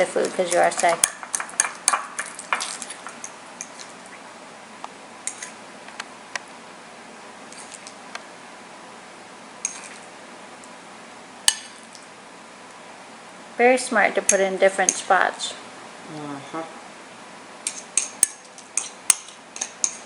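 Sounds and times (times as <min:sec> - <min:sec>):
utensils clinking and scraping dishes: 0:00.0 - 0:03.9.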